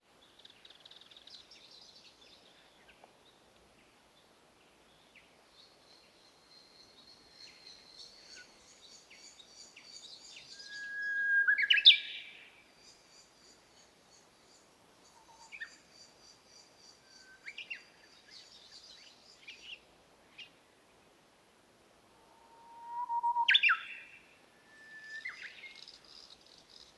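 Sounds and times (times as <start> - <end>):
faint outdoor hiss: 0.0 - 26.9
close bird whistling: 10.5 - 12.4, 22.8 - 25.8.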